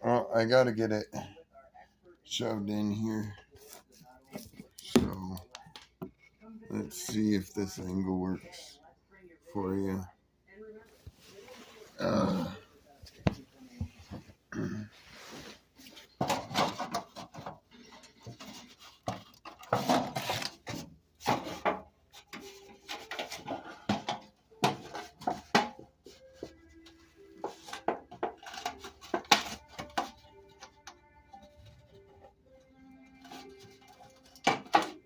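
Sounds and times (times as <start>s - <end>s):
faint background music: 0.0s - 35.0s
scraping rustling and knocking: 15.1s - 26.6s.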